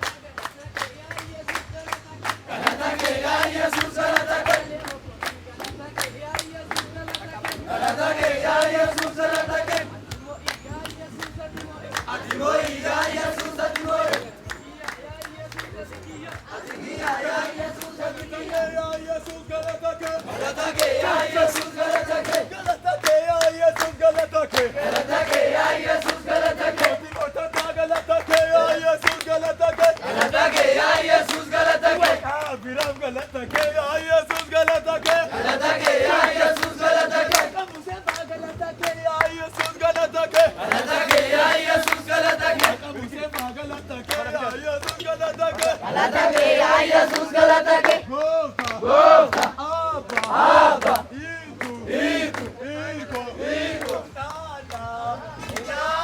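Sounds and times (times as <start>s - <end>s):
congregation singing and shouting: 0.0s - 56.0s
hand-clapping: 0.0s - 56.0s
music: 0.0s - 56.0s.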